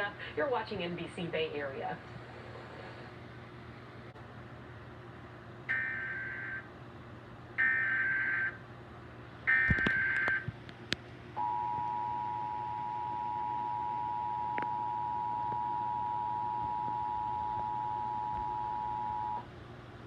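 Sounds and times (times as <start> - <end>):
two-tone attention signal: 11.4 - 19.4.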